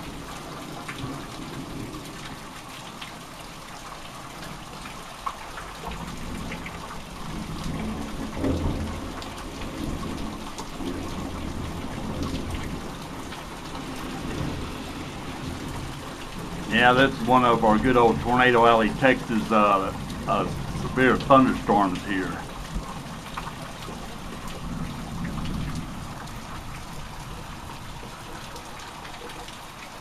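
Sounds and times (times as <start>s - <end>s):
raindrops ticking close by: 0.0s - 30.0s
steady rain: 0.0s - 30.0s
thunder rumbling low: 7.3s - 26.8s.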